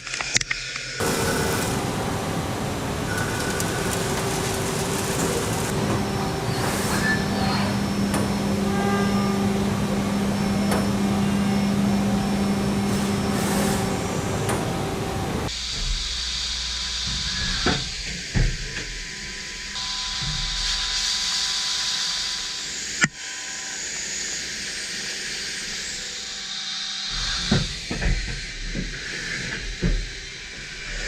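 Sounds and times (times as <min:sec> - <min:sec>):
coolant spray hissing: 0:01.0 - 0:05.8
faint machine whining: 0:01.0 - 0:31.0.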